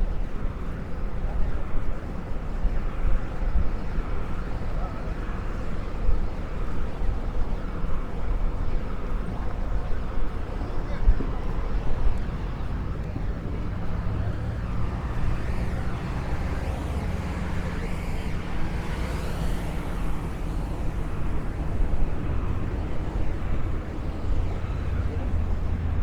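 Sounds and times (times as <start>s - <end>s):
low engine hum: 8.4s - 26.0s
rushing noise passing by: 13.7s - 24.4s.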